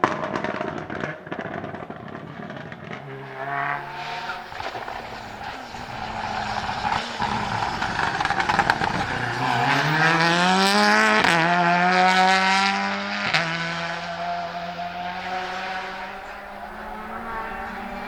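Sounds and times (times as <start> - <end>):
exhaust pops: 0.0 - 11.6
race car accelerating past: 0.0 - 18.0.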